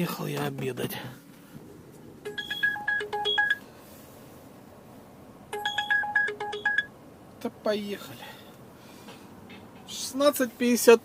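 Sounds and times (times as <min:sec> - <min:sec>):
electronic beeping melody: 0:02.3 - 0:03.6, 0:05.5 - 0:07.0.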